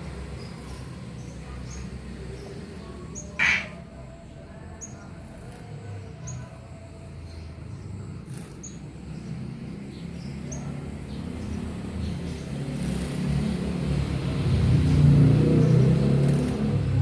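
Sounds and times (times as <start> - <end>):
bird chirping: 0.0 - 13.4.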